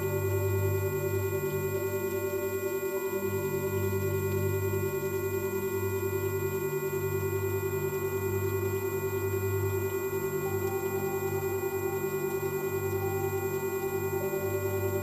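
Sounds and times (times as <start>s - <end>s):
pulsing synthesized hum: 0.0s - 15.0s
low droning tones: 8.6s - 15.0s.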